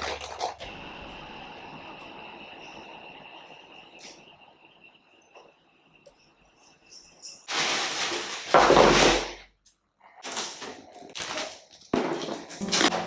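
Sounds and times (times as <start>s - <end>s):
plastic containers rustling and knocking: 7.5s - 9.3s, 10.2s - 13.0s.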